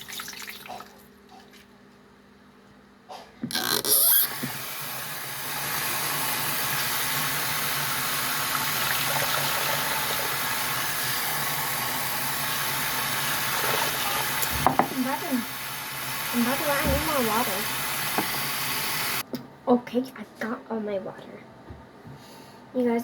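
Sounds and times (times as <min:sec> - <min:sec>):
tap water running into sink: 0:03.8 - 0:19.2.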